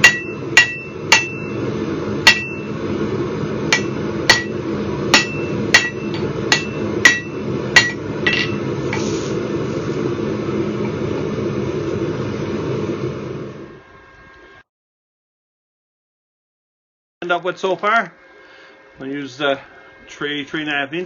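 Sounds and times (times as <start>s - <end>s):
hammer striking steel on anvil: 0.0s - 1.6s, 2.2s - 2.7s, 3.7s - 8.7s.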